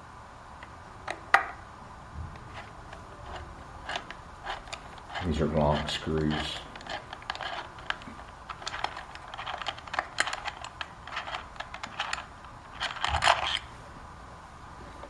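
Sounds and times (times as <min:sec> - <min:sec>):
metal scrape: 0:02.5 - 0:13.7.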